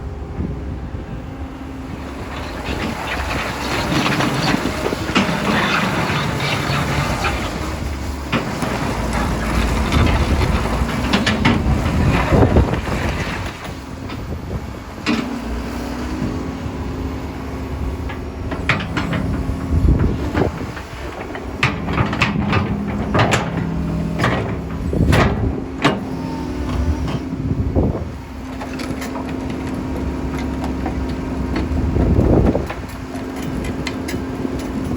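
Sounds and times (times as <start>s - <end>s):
excavator diesel engine running: 0.0s - 34.9s
metallic knocks and clanks: 18.1s - 26.0s.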